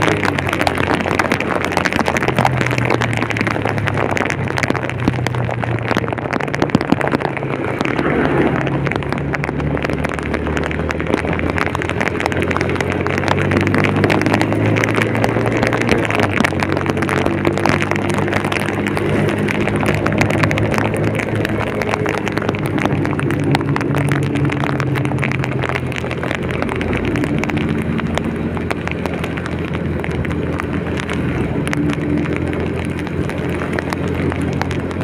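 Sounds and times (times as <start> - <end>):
heavy rain: 0.0 - 35.0
vehicle engine hum: 0.0 - 35.0.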